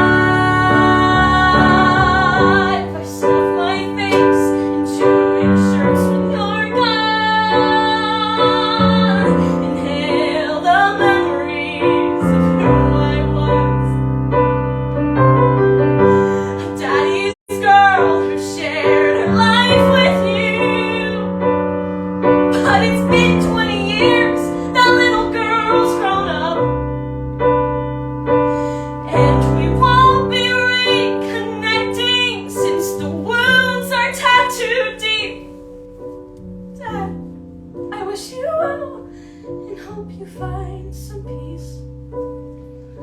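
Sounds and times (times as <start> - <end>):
woman singing with vibrato: 0.0 - 14.0, 16.1 - 21.3, 22.5 - 26.8, 28.6 - 35.6, 36.8 - 37.3, 37.9 - 41.8
piano accompaniment: 0.0 - 43.0.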